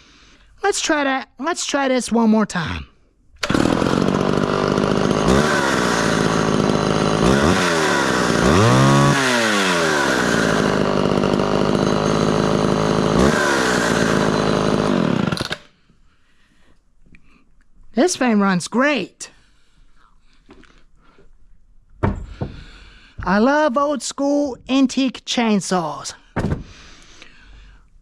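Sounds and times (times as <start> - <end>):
chainsaw revving: 3.4 - 15.7.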